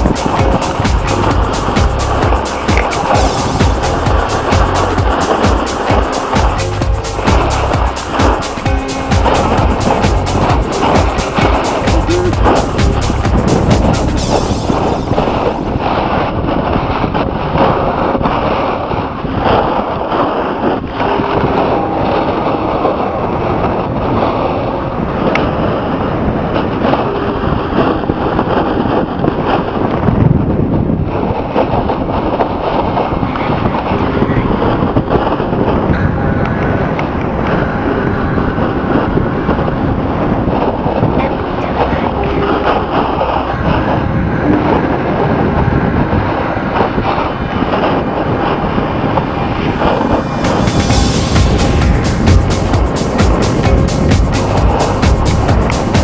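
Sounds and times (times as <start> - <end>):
skis hissing on snow: 0.0 - 15.5
wind rushing over microphone: 0.0 - 56.0.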